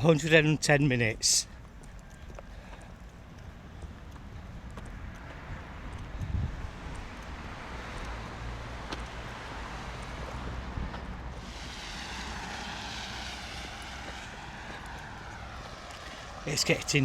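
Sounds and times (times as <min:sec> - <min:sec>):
traffic rumble: 0:00.0 - 0:17.0
passing vehicle hiss on wet road: 0:07.7 - 0:17.0.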